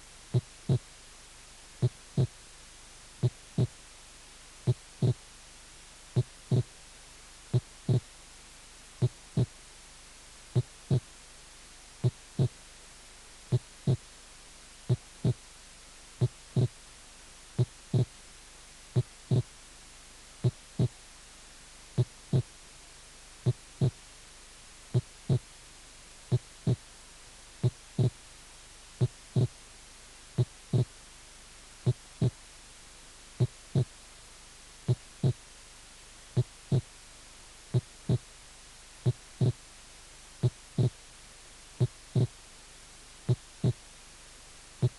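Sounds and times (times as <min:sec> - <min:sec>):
heartbeat lub-dub: 0:00.3 - 0:00.9, 0:01.8 - 0:02.4, 0:03.2 - 0:03.8, 0:04.6 - 0:05.2, 0:06.1 - 0:06.7, 0:07.5 - 0:08.1, 0:09.0 - 0:09.6, 0:10.5 - 0:11.1, 0:12.0 - 0:12.6, 0:13.5 - 0:14.1, 0:14.9 - 0:15.4, 0:16.2 - 0:16.8, 0:17.6 - 0:18.2, 0:18.9 - 0:19.5, 0:20.4 - 0:21.0, 0:22.0 - 0:22.5, 0:23.4 - 0:24.0, 0:24.9 - 0:25.5, 0:26.3 - 0:26.9, 0:27.6 - 0:28.2, 0:29.0 - 0:29.6, 0:30.4 - 0:31.0, 0:31.8 - 0:32.4, 0:33.4 - 0:33.9, 0:34.8 - 0:35.4, 0:36.3 - 0:36.9, 0:37.7 - 0:38.3, 0:39.0 - 0:39.6, 0:40.4 - 0:41.0, 0:41.8 - 0:42.4, 0:43.3 - 0:43.8.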